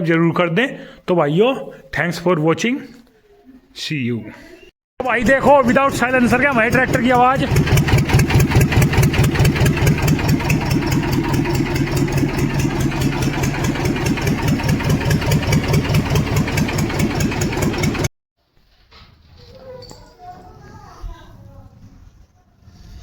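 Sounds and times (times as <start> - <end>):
diesel tractor engine idling: 5.0 - 18.1.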